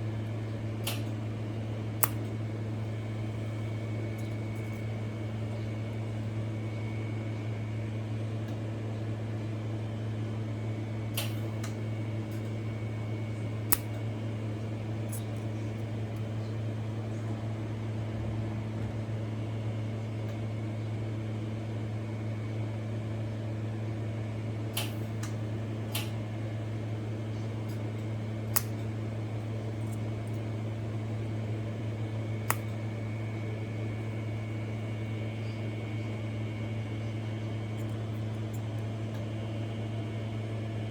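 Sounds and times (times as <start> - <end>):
sharp welding arc clicks: 0.0 - 6.4, 11.2 - 17.3, 24.8 - 36.0
low electrical hum: 0.0 - 40.9.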